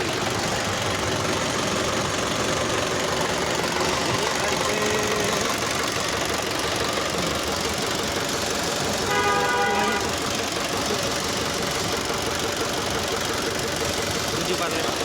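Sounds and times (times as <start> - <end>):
tractor diesel engine running: 0.0 - 15.0.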